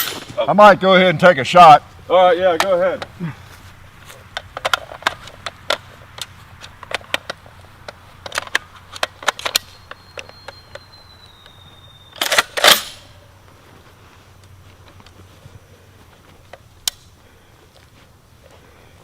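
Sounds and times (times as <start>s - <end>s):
sharp clicks and knocks: 4.3s - 11.6s
faint high steady tone: 9.6s - 12.2s.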